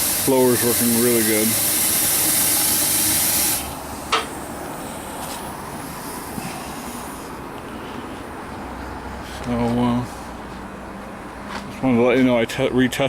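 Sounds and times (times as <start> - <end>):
steam hissing from blower jet: 0.0 - 3.8.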